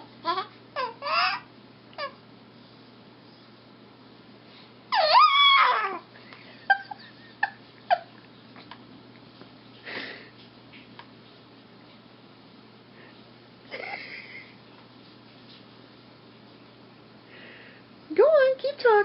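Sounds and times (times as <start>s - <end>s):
baby squealing and squeaking: 0.2s - 2.2s, 4.9s - 6.1s.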